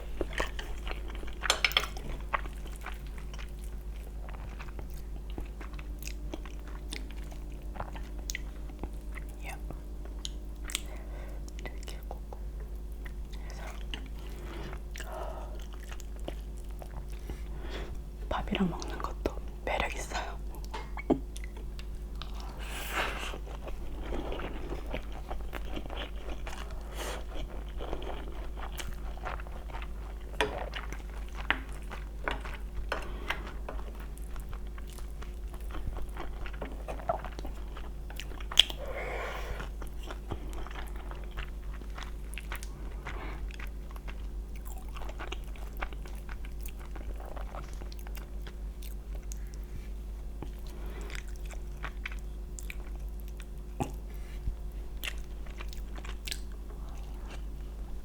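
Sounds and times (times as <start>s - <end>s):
chewing and biting: 20.6s - 38.9s, 39.6s - 49.7s, 50.4s - 57.6s.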